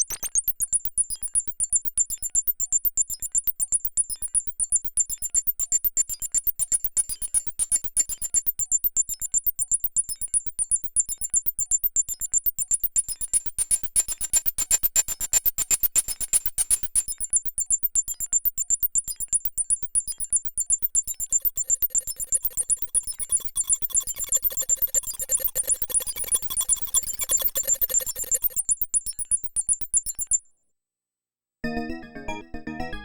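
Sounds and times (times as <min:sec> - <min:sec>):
synthesizer clicky pulses: 0:20.6 - 0:30.4
high bleeping synth tones: 0:21.3 - 0:28.7.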